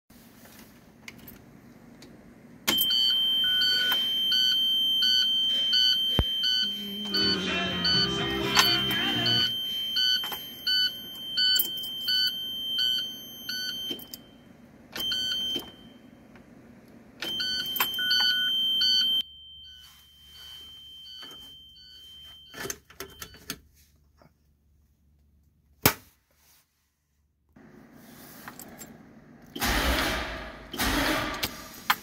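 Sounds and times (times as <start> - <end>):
dashboard warning buzzer: 2.7 - 14.0.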